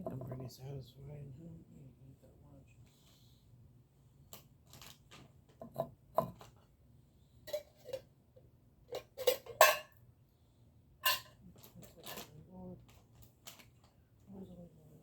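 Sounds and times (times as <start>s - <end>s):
dishes and utensils clinking: 5.6s - 6.5s, 7.5s - 8.1s, 8.9s - 10.0s, 11.0s - 12.3s.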